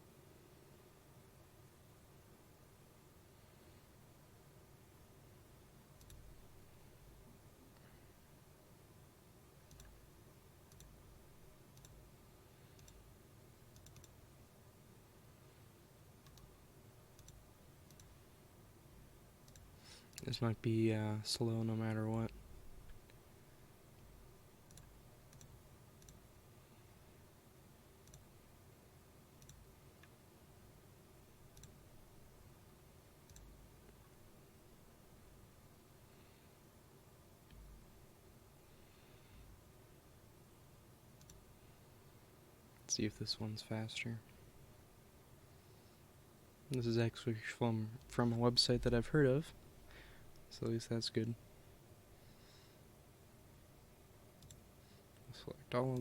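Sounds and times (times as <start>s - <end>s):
computer mouse clicks: 6.0s - 6.3s, 9.7s - 10.0s, 10.7s - 11.0s, 11.7s - 12.0s, 12.7s - 13.0s, 13.7s - 14.2s, 16.2s - 16.5s, 17.1s - 18.2s, 19.4s - 20.3s, 24.7s - 26.2s, 28.0s - 28.3s, 29.4s - 30.2s, 31.5s - 31.8s, 33.2s - 34.0s, 41.2s - 41.4s, 54.4s - 54.6s.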